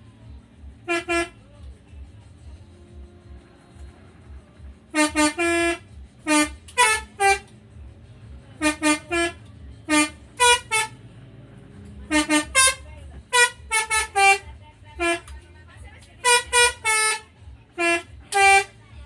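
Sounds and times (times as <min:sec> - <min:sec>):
bus horn playing a tune: 0:00.8 - 0:01.4, 0:04.8 - 0:07.7, 0:08.5 - 0:11.1, 0:11.9 - 0:15.4, 0:16.2 - 0:18.8.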